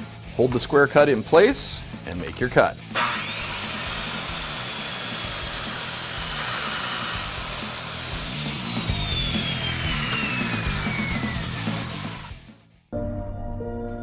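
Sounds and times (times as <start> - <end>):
circular saw cutting a board: 2.9 - 12.4.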